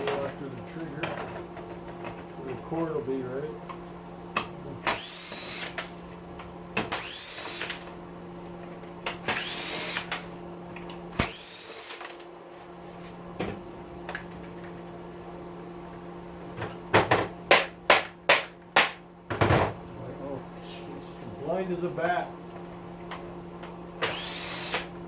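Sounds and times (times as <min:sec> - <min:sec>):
steady low hum: 0:00.0 - 0:25.0
drill-driver whining: 0:04.9 - 0:05.8, 0:06.9 - 0:07.8, 0:09.2 - 0:10.1, 0:11.2 - 0:12.0, 0:24.0 - 0:25.0
loud sharp knocks: 0:16.9 - 0:19.8.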